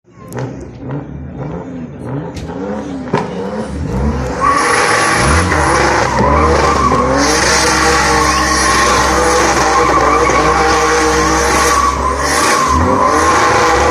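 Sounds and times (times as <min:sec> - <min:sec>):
car engine revving: 0:00.3 - 0:13.9
tyres squealing: 0:04.3 - 0:13.9.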